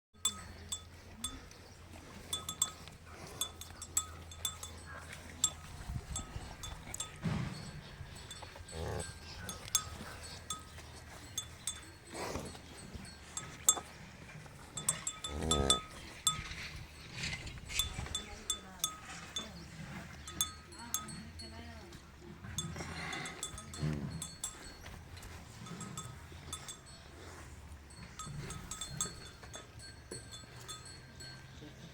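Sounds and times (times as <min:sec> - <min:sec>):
livestock bells clinking: 0:00.2 - 0:31.9
cattle calling: 0:02.2 - 0:19.6.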